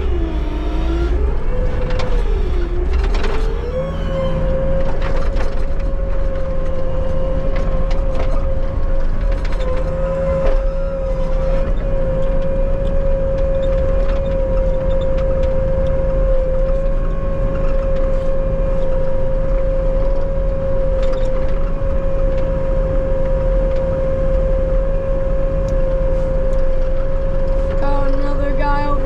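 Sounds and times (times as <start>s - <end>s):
diesel loader engine running: 0.0s - 29.0s
high whine: 0.0s - 29.0s.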